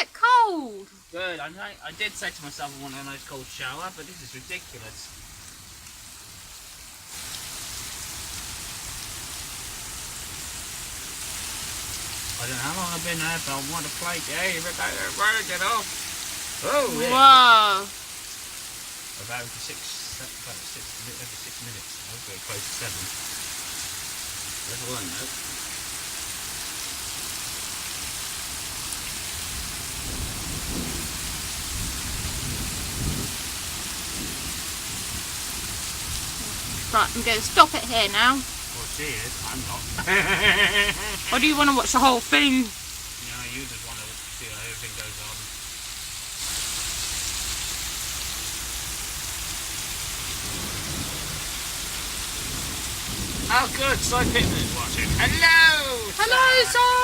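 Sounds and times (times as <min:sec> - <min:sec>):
heavy rain pouring: 0:00.0 - 0:57.0
low thunder rumbling: 0:29.2 - 0:43.1, 0:48.7 - 0:57.0.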